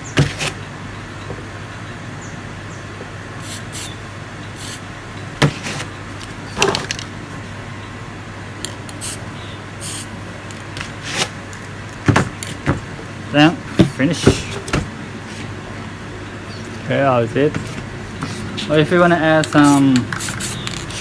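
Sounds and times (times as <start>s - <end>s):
aerosol spray paint hissing: 3.4s - 4.0s, 4.6s - 4.8s, 9.0s - 9.2s, 9.8s - 10.1s, 19.6s - 21.0s.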